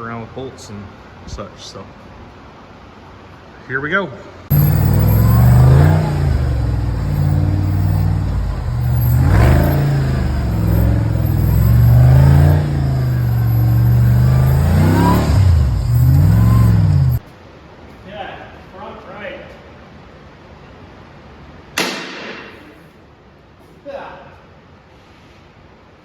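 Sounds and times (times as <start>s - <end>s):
buggy engine revving: 4.5s - 17.2s.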